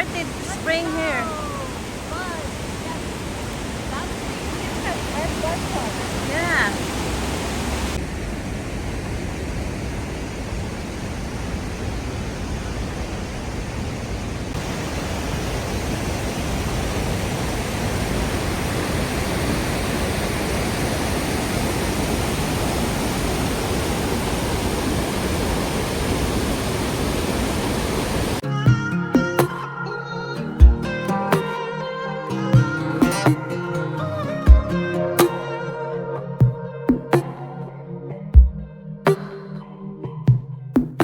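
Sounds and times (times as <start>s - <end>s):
waterfall rushing: 0.0s - 28.4s.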